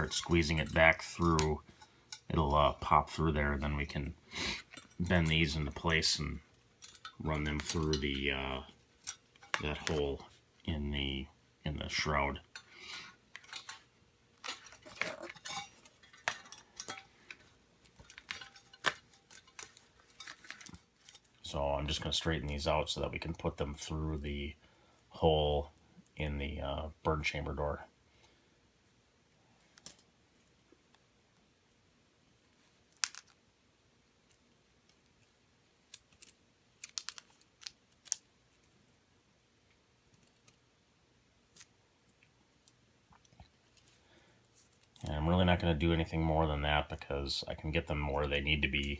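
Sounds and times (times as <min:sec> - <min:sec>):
thin metal lines clinking: 0:00.0 - 0:10.3, 0:12.0 - 0:23.1.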